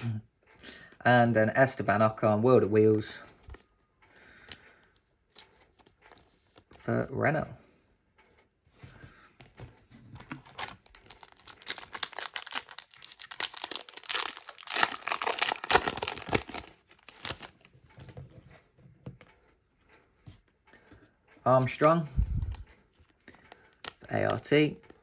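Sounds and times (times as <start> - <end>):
foil wrapper tearing and crinkling: 10.4 - 17.5.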